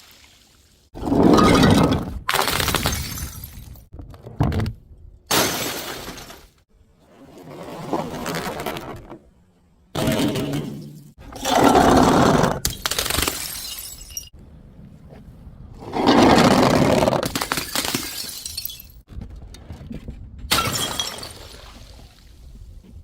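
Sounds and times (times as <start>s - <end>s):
glass bottles shattering: 1.3s - 3.9s, 5.3s - 6.5s, 12.6s - 14.3s, 17.3s - 19.0s, 20.5s - 21.8s.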